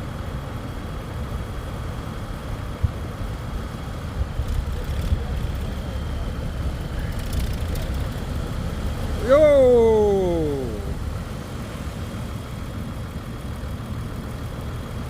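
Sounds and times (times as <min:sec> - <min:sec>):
outboard motors rumbling: 0:03.9 - 0:14.9.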